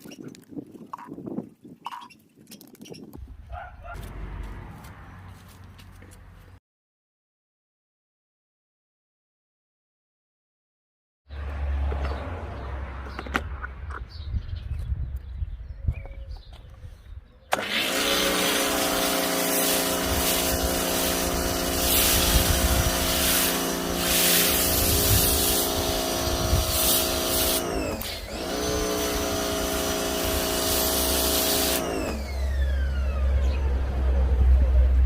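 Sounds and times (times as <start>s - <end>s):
pressure washer motor hum: 17.5s - 34.1s
loud hiss of spray: 17.8s - 32.2s.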